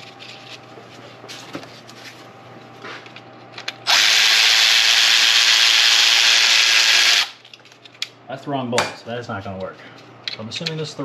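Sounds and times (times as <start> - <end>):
power tool whirring: 3.9 - 7.4.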